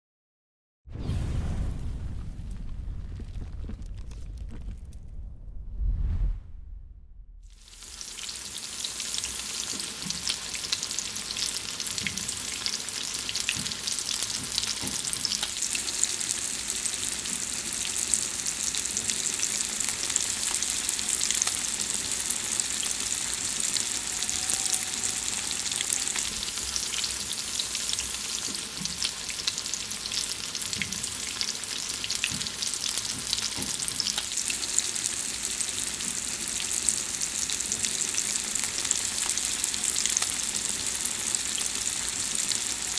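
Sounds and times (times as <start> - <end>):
food sizzling in hot fat: 7.5 - 42.9.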